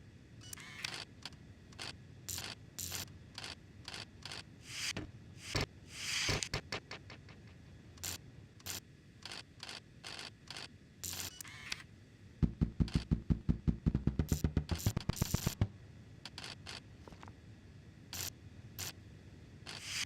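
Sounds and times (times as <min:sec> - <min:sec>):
fast ratcheting clicks: 0:12.8 - 0:13.3, 0:14.3 - 0:15.7.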